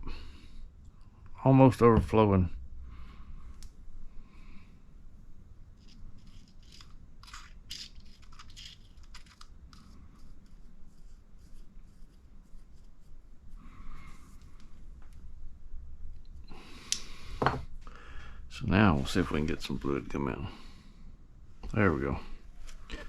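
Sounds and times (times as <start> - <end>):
small plastic parts clicking: 5.8 - 10.0.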